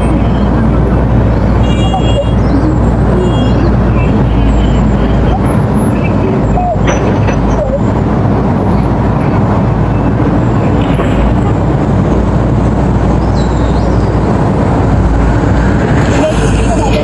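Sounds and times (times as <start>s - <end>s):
excavator diesel engine rumbling: 0.0s - 17.0s.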